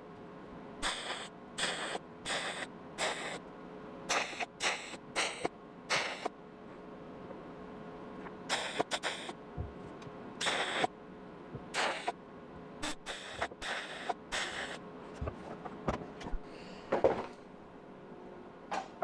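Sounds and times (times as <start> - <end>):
welder sizzling bursts: 0.8 - 3.4, 4.1 - 6.3, 8.5 - 9.4, 10.4 - 10.9, 11.8 - 12.1, 12.8 - 14.8.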